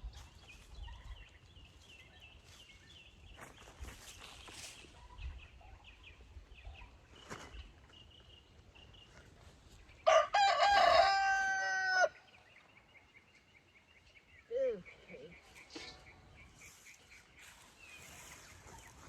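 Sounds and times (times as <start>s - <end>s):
rooster crowing: 10.1s - 12.2s.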